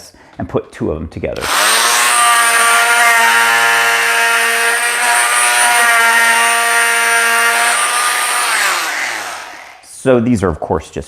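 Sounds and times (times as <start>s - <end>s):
oscillating multi-tool humming: 1.4s - 9.8s.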